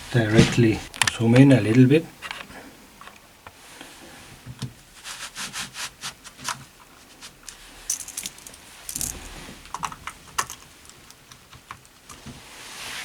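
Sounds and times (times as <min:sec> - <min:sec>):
rustling: 0:05.0 - 0:12.4
keyboard keys clicking and rattling: 0:07.9 - 0:12.1.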